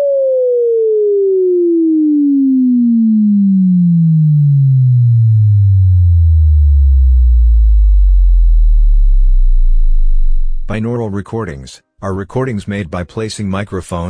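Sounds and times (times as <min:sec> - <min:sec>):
sine tone sweeping down: 0:00.0 - 0:10.7.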